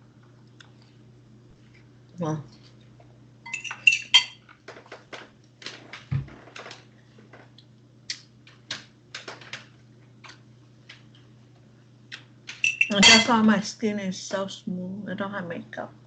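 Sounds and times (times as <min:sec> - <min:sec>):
cutlery clinking against a dish: 0:03.5 - 0:04.4, 0:12.6 - 0:13.4.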